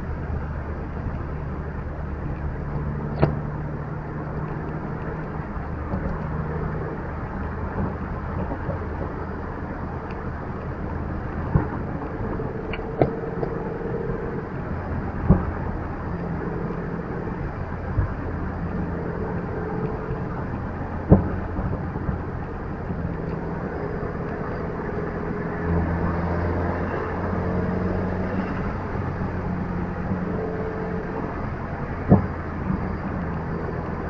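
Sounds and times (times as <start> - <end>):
car engine: 0.0 - 34.0
road noise: 0.0 - 34.0
sharp knocks: 12.7 - 13.6.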